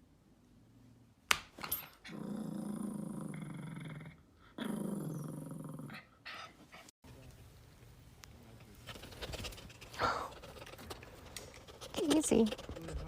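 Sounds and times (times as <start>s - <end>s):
dog growling: 2.0s - 6.1s.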